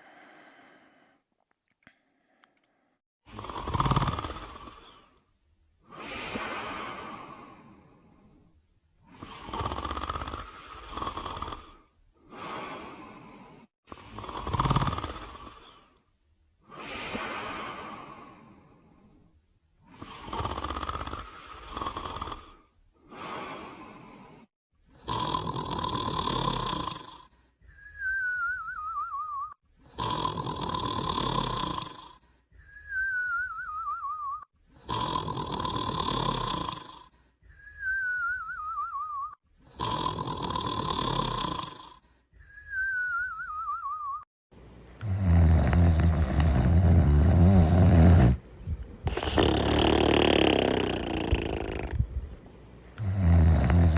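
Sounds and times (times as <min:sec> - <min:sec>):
cartoon snoring with whistle: 0:03.3 - 0:05.2, 0:09.1 - 0:13.0, 0:13.9 - 0:15.9, 0:19.9 - 0:23.8, 0:25.0 - 0:44.3, 0:45.0 - 0:48.4, 0:49.0 - 0:52.0, 0:52.9 - 0:53.9.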